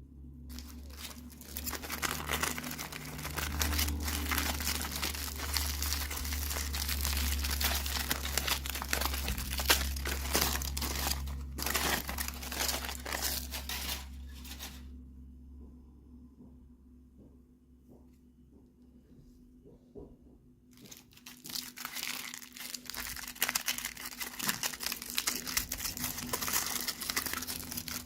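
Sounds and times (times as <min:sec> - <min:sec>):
packaging tearing: 0:00.5 - 0:14.8, 0:20.8 - 0:28.0
plastic packaging crinkling: 0:00.5 - 0:14.9, 0:20.8 - 0:28.0.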